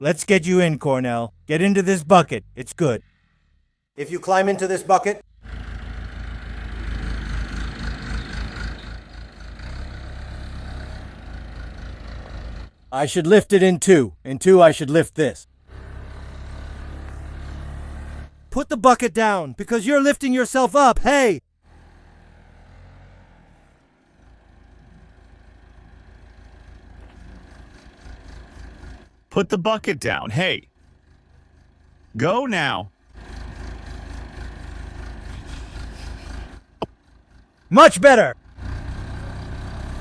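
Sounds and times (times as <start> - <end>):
backhoe engine idling: 5.3 - 13.2, 21.7 - 40.0.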